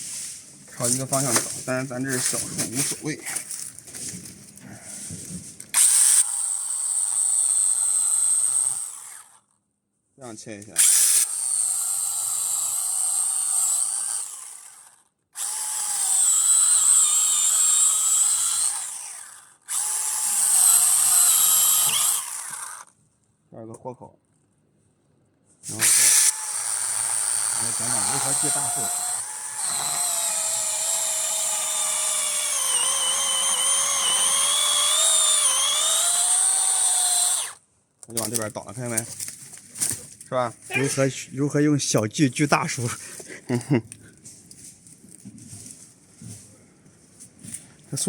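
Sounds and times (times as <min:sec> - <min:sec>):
battery chainsaw whining: 0:00.6 - 0:09.4, 0:10.7 - 0:22.9, 0:25.7 - 0:37.6, 0:38.2 - 0:40.0, 0:40.6 - 0:41.4, 0:42.1 - 0:43.8
chainsaw chain winding down: 0:05.7 - 0:09.4, 0:10.8 - 0:22.9, 0:25.7 - 0:37.6.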